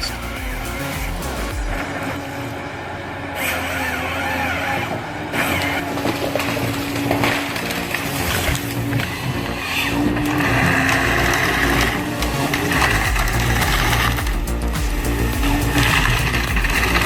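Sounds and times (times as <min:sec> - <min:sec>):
harvester engine running: 0:00.0 - 0:17.0
wood cracking and crushing: 0:05.4 - 0:14.2.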